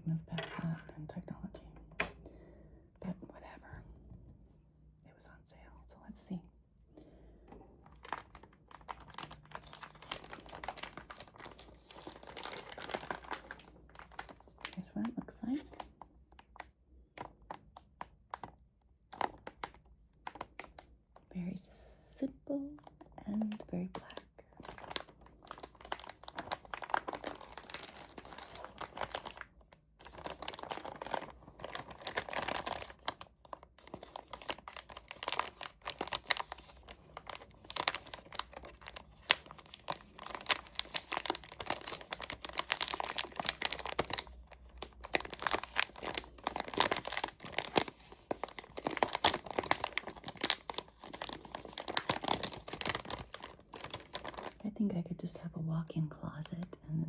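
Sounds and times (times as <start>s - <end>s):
packaging crinkling: 7.8s - 20.9s, 22.9s - 54.6s.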